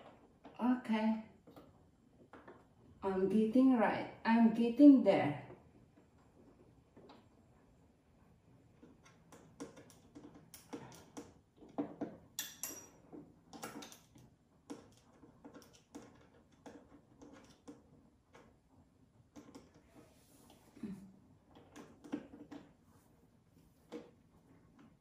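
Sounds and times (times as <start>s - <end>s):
curtain hardware clicks and knocks: 8.8s - 18.6s.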